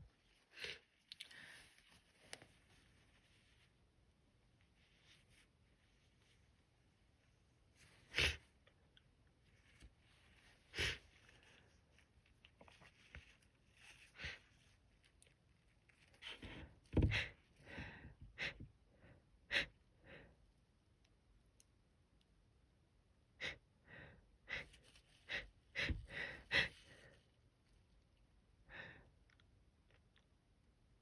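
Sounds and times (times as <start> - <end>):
person gasping: 23.4 - 27.0.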